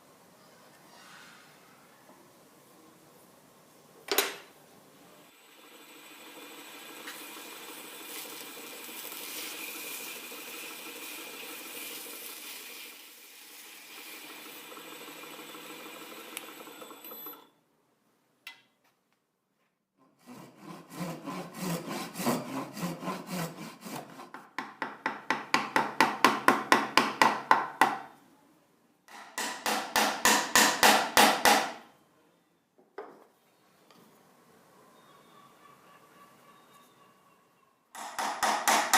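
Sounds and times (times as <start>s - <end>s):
hand tool scraping wood: 20.1s - 24.5s.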